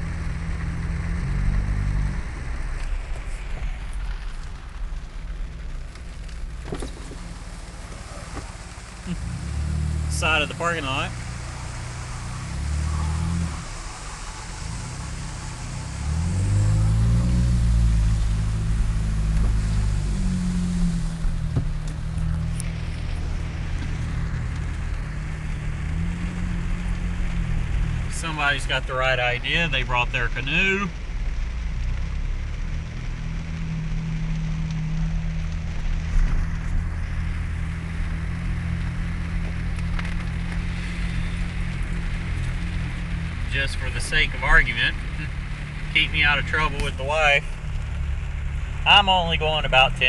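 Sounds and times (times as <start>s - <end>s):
car engine driving slowly: 0.0s - 50.0s
tyres hissing through water: 6.7s - 30.9s, 40.2s - 49.6s.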